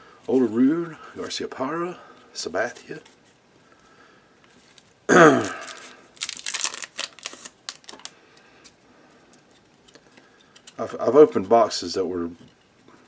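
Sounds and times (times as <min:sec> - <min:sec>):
foil wrapper crinkling and tearing: 0:04.6 - 0:08.2.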